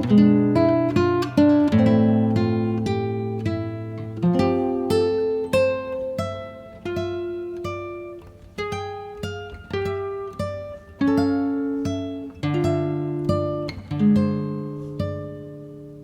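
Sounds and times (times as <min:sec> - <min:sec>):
plucked acoustic guitar: 0:00.0 - 0:16.0.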